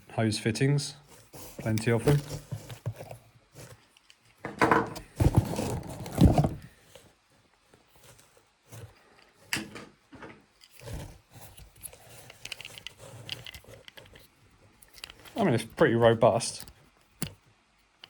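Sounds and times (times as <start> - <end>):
plastic knocks and scrapes: 4.4 - 6.8.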